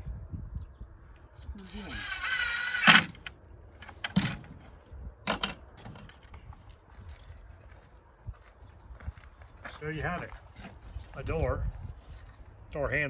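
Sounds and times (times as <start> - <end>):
power driver whining: 1.6 - 4.5.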